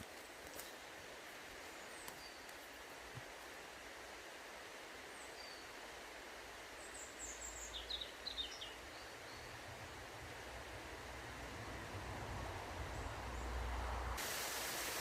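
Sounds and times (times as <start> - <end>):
flowing water hiss: 0.0 - 15.0
small birds chirping: 6.6 - 10.1.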